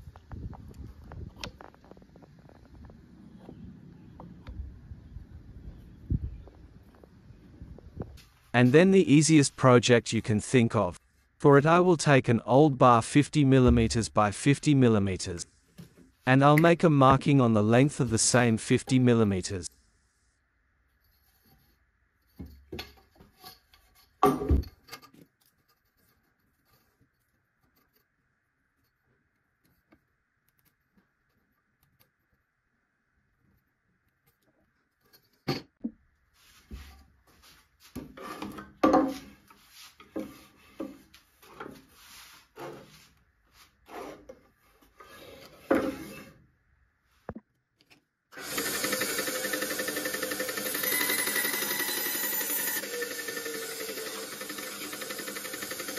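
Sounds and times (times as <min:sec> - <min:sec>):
wooden bar and tools clattering: 0:21.2 - 0:26.8, 0:37.9 - 0:41.9
hand tool rasping wood: 0:38.0 - 0:43.1, 0:43.8 - 0:46.4, 0:48.4 - 0:55.9
power tool running: 0:48.4 - 0:55.9.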